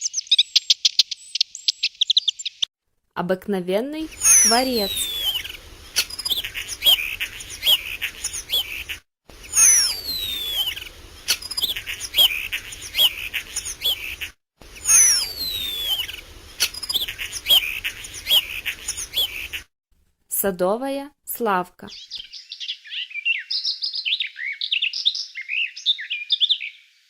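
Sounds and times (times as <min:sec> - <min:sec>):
starling song: 0:04.0 - 0:19.6.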